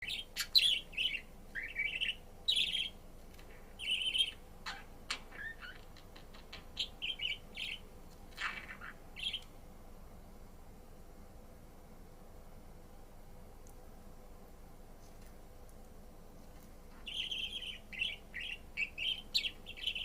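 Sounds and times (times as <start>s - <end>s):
budgerigar chirping and warbling: 0.0s - 3.0s, 3.6s - 7.8s, 8.4s - 9.4s, 17.0s - 20.0s.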